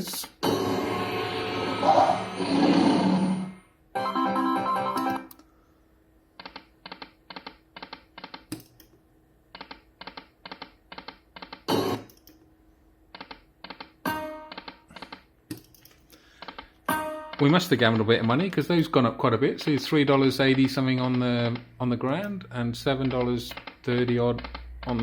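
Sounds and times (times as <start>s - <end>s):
slot machine jingle: 4.0s - 5.3s
slot machine reel clicks: 4.6s - 5.4s, 13.2s - 14.8s.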